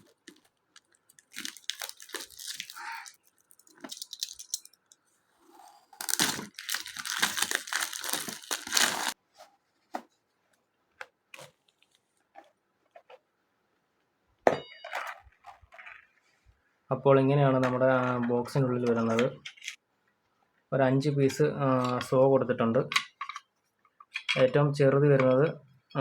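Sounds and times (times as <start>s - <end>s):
plastic wrap crinkling and ripping: 0.0s - 4.6s, 5.9s - 9.2s.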